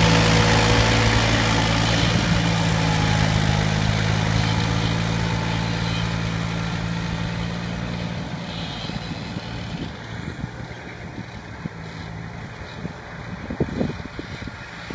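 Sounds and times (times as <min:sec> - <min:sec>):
tractor engine running: 0:00.0 - 0:14.9.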